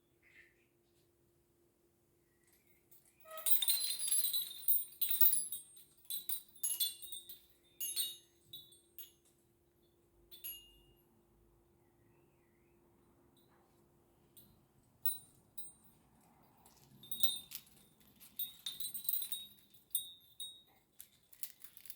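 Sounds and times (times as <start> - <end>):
wind chimes ringing: 3.2 - 9.3, 10.3 - 11.0, 15.0 - 16.0, 16.7 - 20.8.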